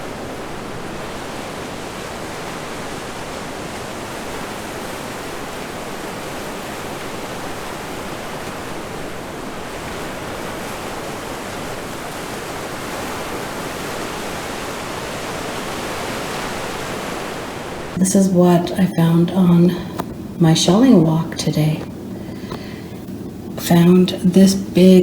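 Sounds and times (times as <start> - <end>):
wind: 0.0 - 18.0
surf on a beach: 0.0 - 25.0.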